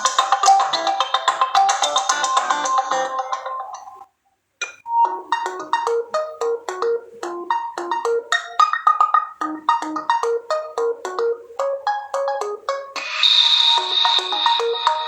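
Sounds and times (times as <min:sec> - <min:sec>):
marimba-like ringtone melody: 0:00.0 - 0:04.1, 0:04.9 - 0:15.0
hissing wash with high tone: 0:13.0 - 0:15.0.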